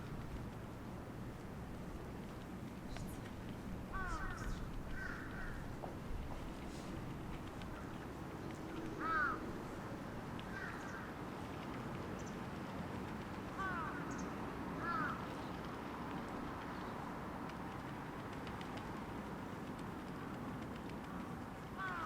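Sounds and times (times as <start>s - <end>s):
low background hum: 0.0s - 22.0s
crow cawing: 3.9s - 5.7s, 9.0s - 9.5s, 10.4s - 11.1s, 13.6s - 14.1s, 14.8s - 15.2s, 21.8s - 22.0s.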